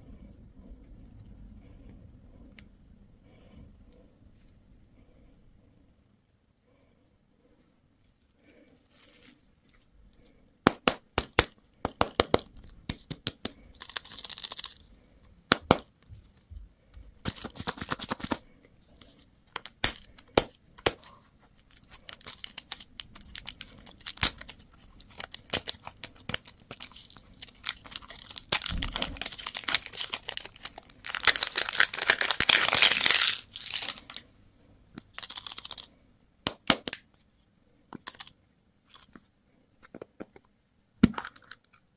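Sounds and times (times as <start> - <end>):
wrappers crinkling and tearing: 13.7 - 14.8, 19.5 - 34.2, 35.1 - 35.9.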